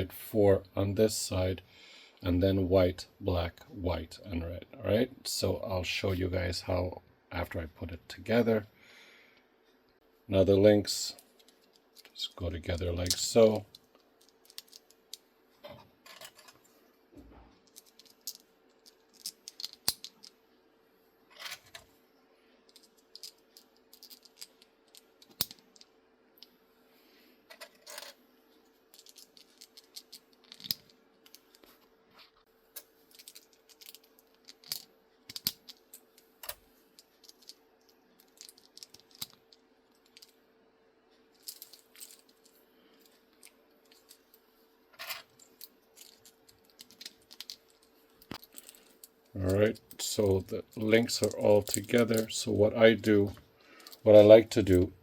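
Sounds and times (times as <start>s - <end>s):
faint steady hum: 0.0s - 55.0s
plastic links snapping together: 33.1s - 35.8s.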